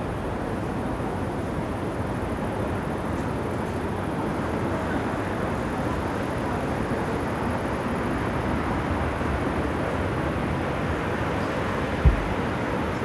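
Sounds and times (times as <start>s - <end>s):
distant city traffic rumble: 10.7s - 13.0s.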